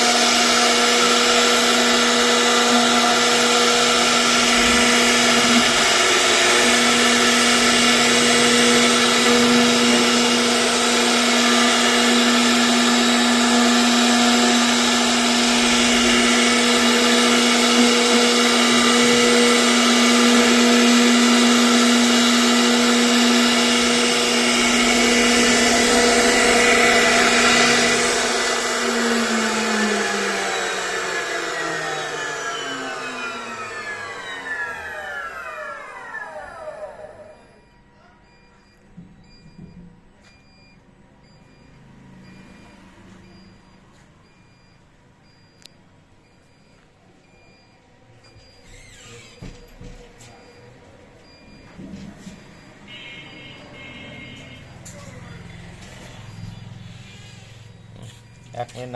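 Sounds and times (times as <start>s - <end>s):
cutting noise: 0.0s - 36.7s
router spindle whining: 0.0s - 37.6s, 48.3s - 58.9s.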